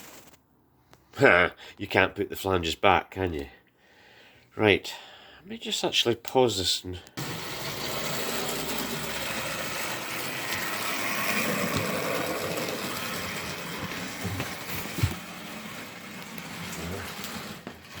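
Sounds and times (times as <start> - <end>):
wheels rattling over rails: 7.2 - 18.0.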